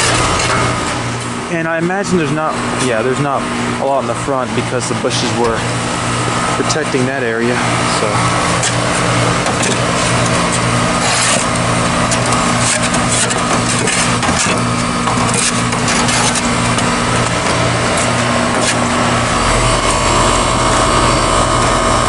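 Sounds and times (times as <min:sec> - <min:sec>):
heat pump humming: 0:00.0 - 0:22.0.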